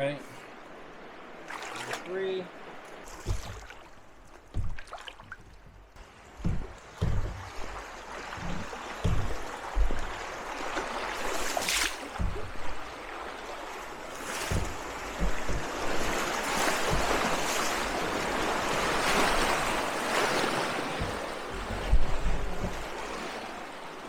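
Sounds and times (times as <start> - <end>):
low thumps: 4.4 - 10.4, 12.1 - 12.9, 14.5 - 16.2, 20.9 - 22.9
whitewater rushing: 6.0 - 23.6.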